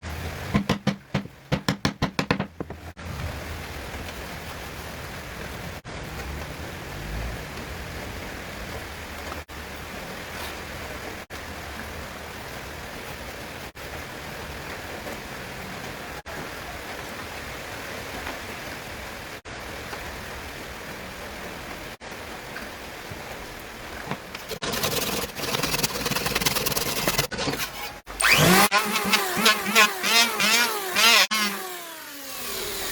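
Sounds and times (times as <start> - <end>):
rattling buzz: 24.6 - 32.9
motor rising and falling pitch: 28.1 - 32.9.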